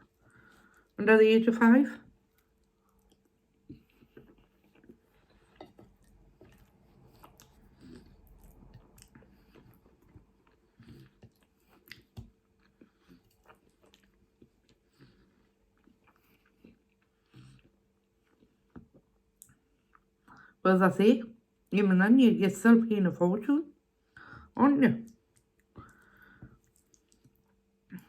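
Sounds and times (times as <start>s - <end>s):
person chewing food: 2.1s - 20.4s, 25.1s - 28.0s
wet mouth clicks and smacks: 26.6s - 27.5s.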